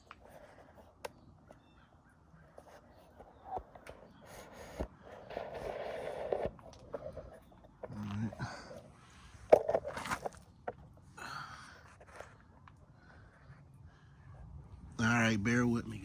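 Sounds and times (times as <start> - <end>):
scraping and rustling: 2.5 - 8.4.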